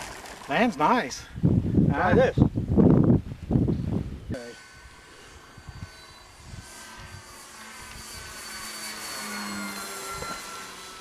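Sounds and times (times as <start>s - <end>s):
wind buffeting on microphone: 0.6s - 8.5s
model airplane motor whining: 4.3s - 11.0s.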